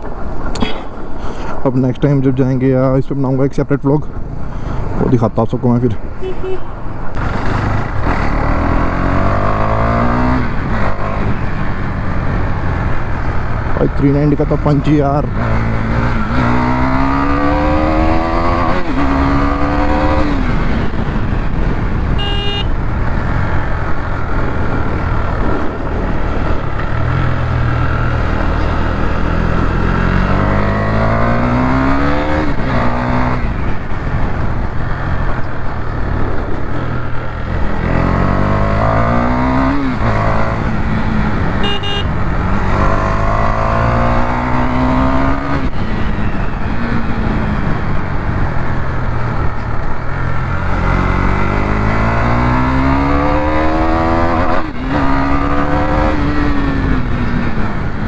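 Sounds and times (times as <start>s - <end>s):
horn beeps: 6.2s - 6.8s, 22.2s - 22.8s, 41.6s - 42.2s
motorcycle engine accelerating: 6.2s - 58.0s
wind rush: 15.0s - 55.6s.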